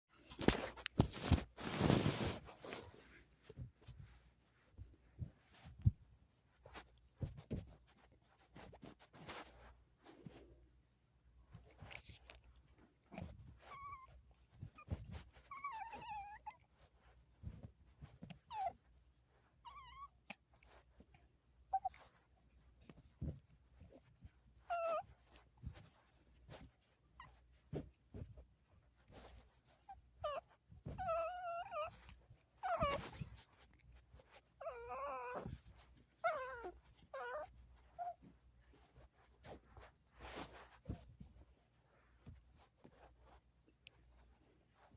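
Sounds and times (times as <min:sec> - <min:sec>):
dog whining and whimpering: 0:13.1 - 0:20.8, 0:21.6 - 0:22.2, 0:23.2 - 0:38.8
dog whimpering: 0:13.6 - 0:16.6, 0:19.6 - 0:20.3, 0:24.6 - 0:25.2, 0:30.2 - 0:33.4, 0:34.3 - 0:38.2.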